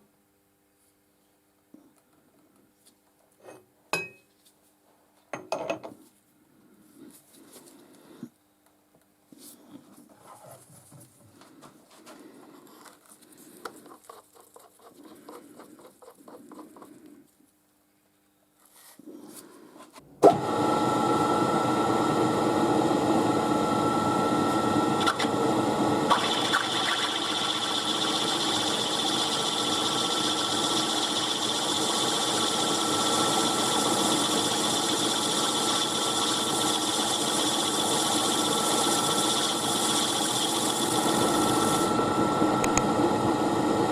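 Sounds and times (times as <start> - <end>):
faint handling sounds: 6.0 - 20.0
milling machine whining: 20.2 - 43.9.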